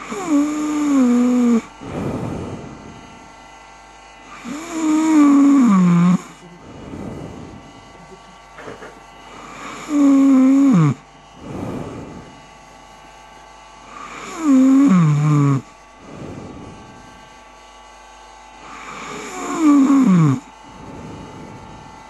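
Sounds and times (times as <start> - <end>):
person moaning while snoring: 0.0 - 3.0, 4.3 - 12.5, 14.0 - 17.1, 18.6 - 21.8
breathy snores: 0.0 - 3.1, 4.2 - 12.5, 13.8 - 17.2, 18.6 - 21.8.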